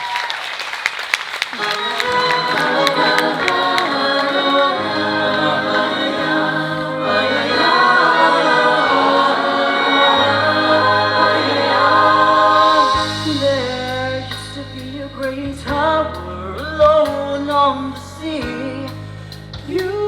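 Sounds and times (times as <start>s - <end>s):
applause: 0.0s - 4.6s
live choir-like music: 0.0s - 20.0s.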